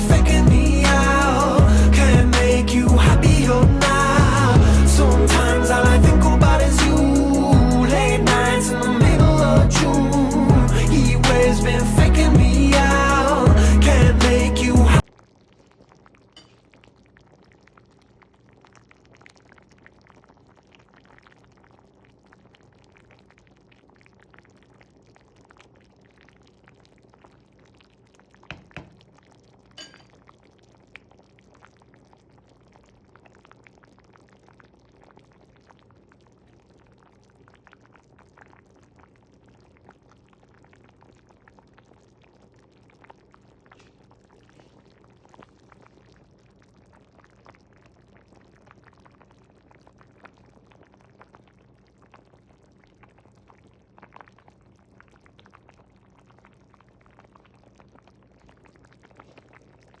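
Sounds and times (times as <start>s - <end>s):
low steady hum: 0.0s - 16.9s, 28.1s - 30.8s
soup boiling in a pot: 15.0s - 60.0s.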